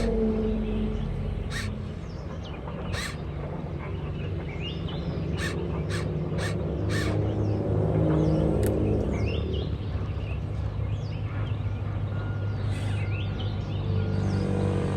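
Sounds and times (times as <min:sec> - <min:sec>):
crow cawing: 0:00.0 - 0:00.2, 0:01.3 - 0:02.0, 0:02.9 - 0:03.3, 0:05.3 - 0:07.2
small birds chirping: 0:00.0 - 0:14.4
low motor hum: 0:00.0 - 0:14.9.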